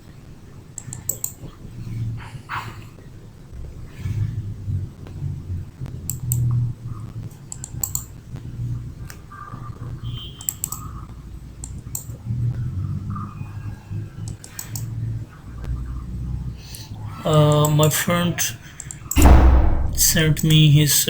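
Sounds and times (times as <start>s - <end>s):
keyboard and mouse clicking: 0.8s - 1.4s, 7.5s - 8.1s, 10.4s - 10.8s, 14.3s - 14.9s
low rumble: 19.2s - 20.4s.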